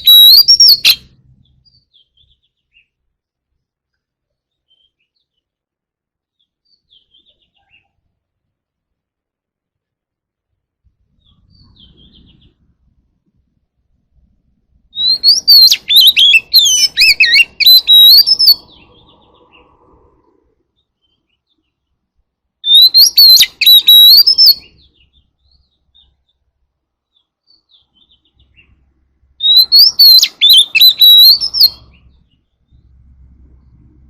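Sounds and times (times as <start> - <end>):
bird singing whistled phrases: 0.0 - 2.9, 14.9 - 19.3, 22.6 - 26.2, 29.4 - 32.2.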